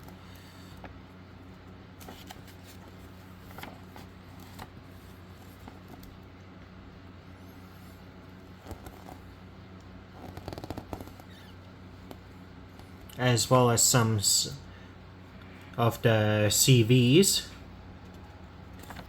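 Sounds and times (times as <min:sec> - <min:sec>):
steady low hum: 0:00.0 - 0:19.0
pages rustling: 0:02.0 - 0:06.2, 0:08.6 - 0:09.3, 0:18.7 - 0:19.0.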